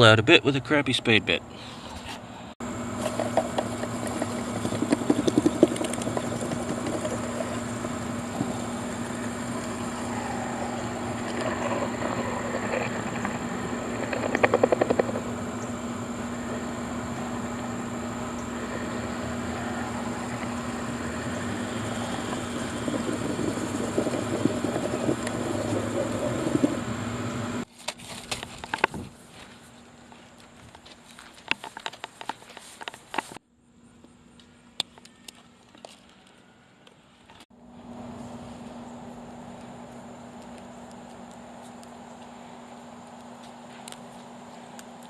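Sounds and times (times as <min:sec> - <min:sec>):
power drill humming: 0:02.8 - 0:27.6
drill bit chattering: 0:03.0 - 0:27.6.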